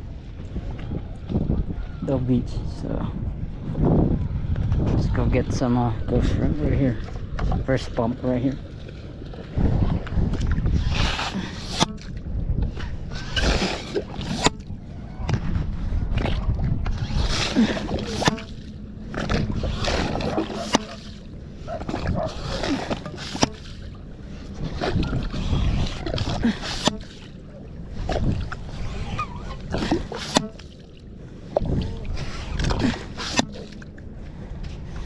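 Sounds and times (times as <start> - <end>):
bait pump sucking and splashing: 13.1 - 14.7, 16.1 - 27.3.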